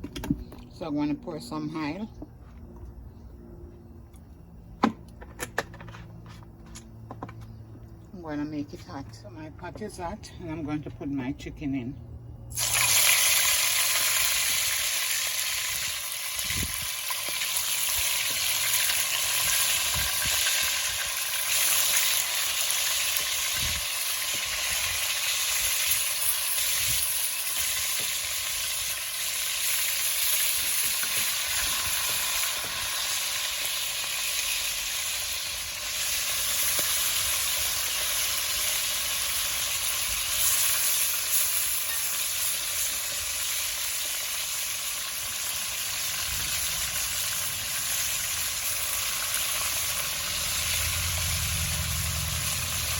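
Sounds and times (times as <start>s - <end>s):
chicken sizzling in hot oil: 12.5s - 52.9s.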